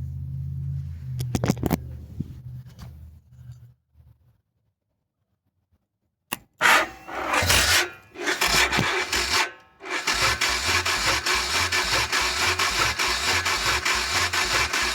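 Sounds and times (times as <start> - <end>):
click: 6.3 - 6.5
motorcycle starter cranking: 6.6 - 14.9.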